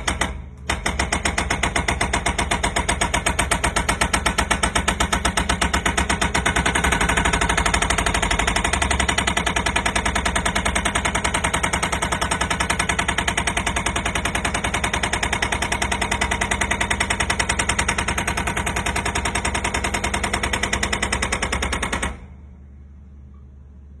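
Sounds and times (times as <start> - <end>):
pile driver hammering steel pile: 0.0 - 22.3
low steady hum: 22.2 - 24.0.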